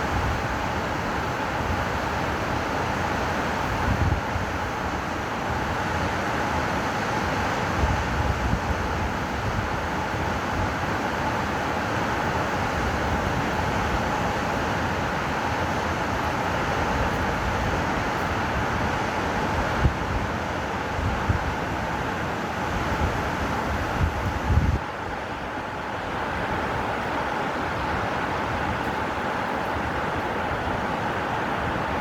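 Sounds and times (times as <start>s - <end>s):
waves breaking on shore: 0.0s - 32.0s
wind buffeting microphone: 22.8s - 24.8s.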